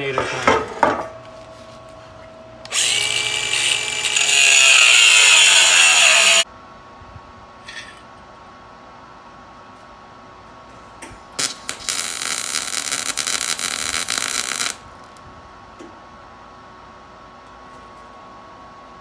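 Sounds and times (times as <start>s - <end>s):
electric power tool motor: 2.7s - 6.4s, 11.4s - 14.8s
metal-cutting hiss: 2.7s - 6.4s, 11.4s - 14.8s.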